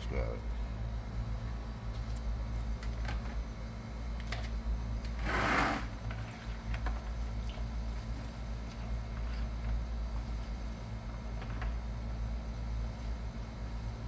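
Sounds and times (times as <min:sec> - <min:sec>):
steady low hum: 0:00.0 - 0:05.0.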